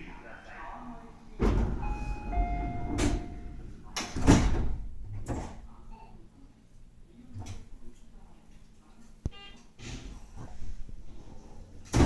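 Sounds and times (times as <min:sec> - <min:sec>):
sliding train doors rumbling: 0:01.4 - 0:05.6
two-note door chime: 0:01.8 - 0:03.6.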